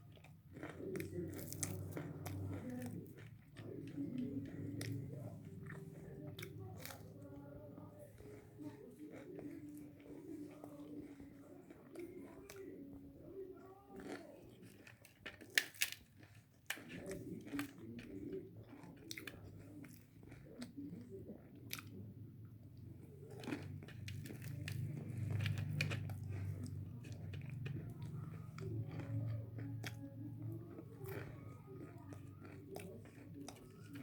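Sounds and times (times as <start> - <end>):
person chewing crunchy fritters: 0.0 - 34.0.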